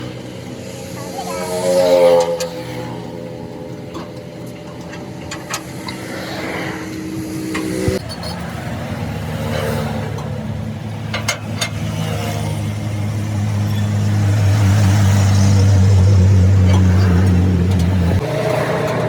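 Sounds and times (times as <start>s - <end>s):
vehicle engine running: 0.0s - 19.0s.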